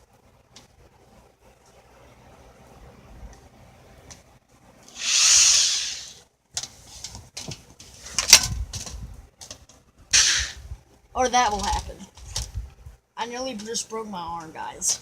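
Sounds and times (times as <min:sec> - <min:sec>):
clicks and knocks of metal parts: 0:06.6 - 0:09.8.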